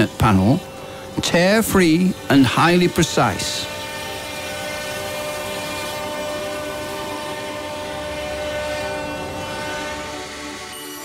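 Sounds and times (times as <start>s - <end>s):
machine spindle and saw whine: 0.0s - 11.0s.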